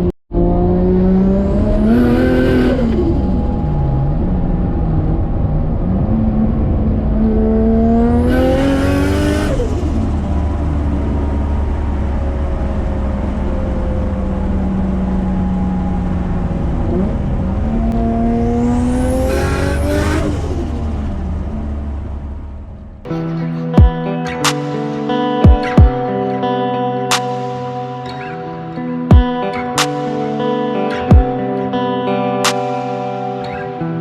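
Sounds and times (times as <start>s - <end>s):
guitar music: 0.0s - 22.0s, 23.0s - 34.0s
car engine revving: 0.0s - 23.1s.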